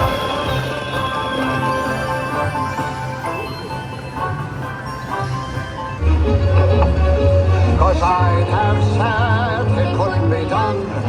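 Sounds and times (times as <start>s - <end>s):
slot machine game music: 0.0s - 7.6s.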